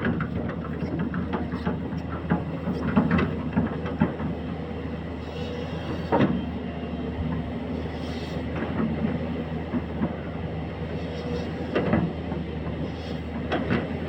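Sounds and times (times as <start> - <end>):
diesel engine running: 0.0 - 14.0
excavator knocks and clanks: 0.0 - 14.0.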